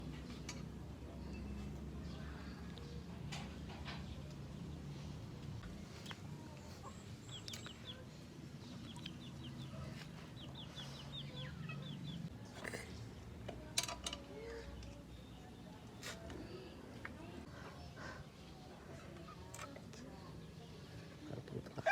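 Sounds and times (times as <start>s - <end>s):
birds chirping: 0.1s - 13.5s.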